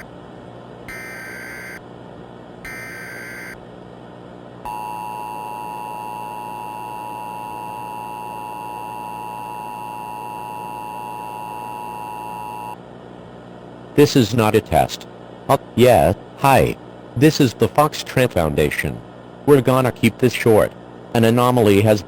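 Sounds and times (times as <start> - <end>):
buzzing data tones: 0.9 - 1.8, 2.6 - 3.6, 4.7 - 12.8.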